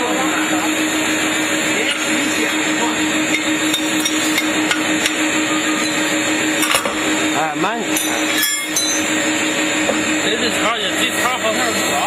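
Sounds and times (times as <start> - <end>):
machine hum: 0.0 - 12.0
hammer striking metal: 3.3 - 5.2, 7.9 - 9.2.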